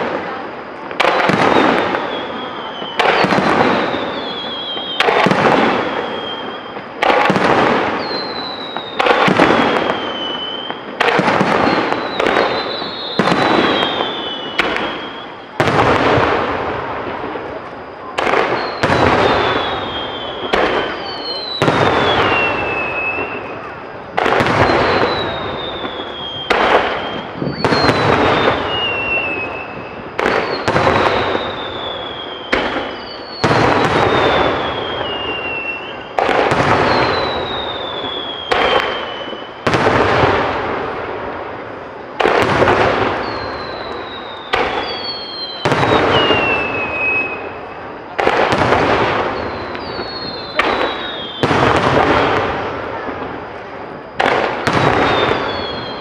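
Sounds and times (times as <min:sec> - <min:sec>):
falling firework whistles: 0:00.0 - 0:56.0.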